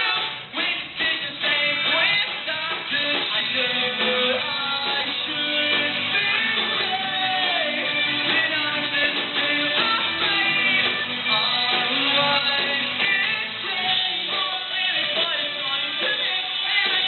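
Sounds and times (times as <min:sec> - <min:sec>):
electric guitar: 0:00.0 - 0:17.0
person singing: 0:00.0 - 0:17.0
rock band playing: 0:00.0 - 0:17.0.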